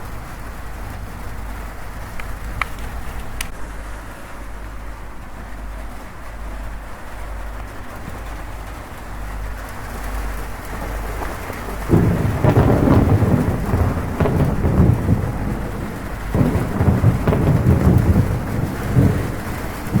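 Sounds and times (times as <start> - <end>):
heavy rain on a metal roof: 0.0 - 20.0
rolling thunder: 6.4 - 20.0.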